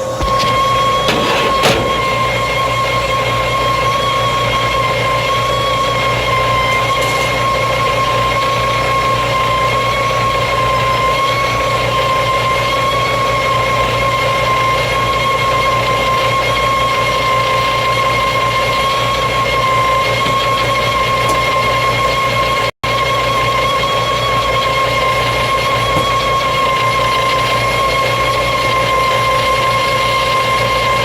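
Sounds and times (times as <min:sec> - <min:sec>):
machine whining and humming: 0:00.0 - 0:31.0.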